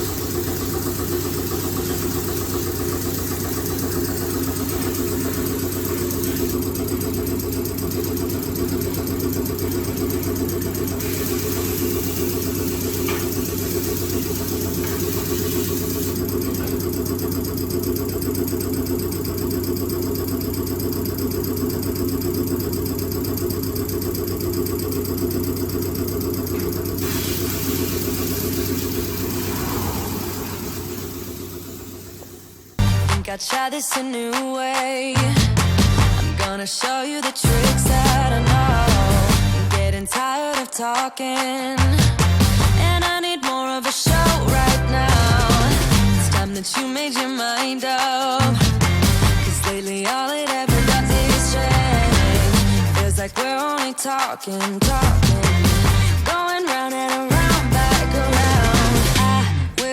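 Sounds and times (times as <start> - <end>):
diesel engine idling: 0.0 - 33.3, 37.5 - 40.1, 41.8 - 43.1, 44.1 - 46.7, 48.4 - 50.0, 50.7 - 53.4, 54.8 - 56.3, 57.3 - 59.8
high hiss: 27.0 - 32.8.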